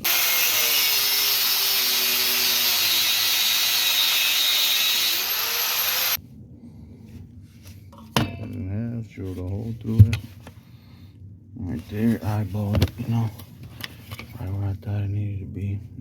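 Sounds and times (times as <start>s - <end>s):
loud cutting hiss: 0.0s - 6.2s
power cutting tool motor: 0.0s - 6.2s.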